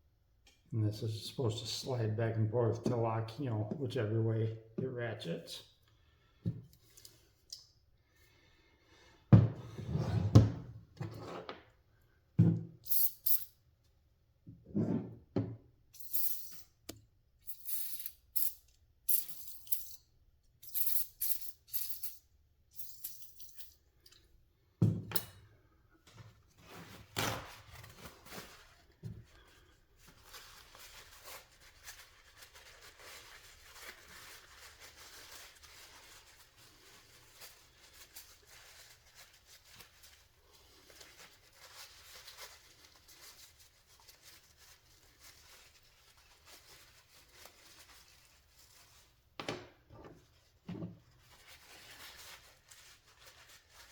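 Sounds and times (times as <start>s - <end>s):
metal parts clicking and scraping: 20.6s - 22.2s, 22.8s - 23.8s.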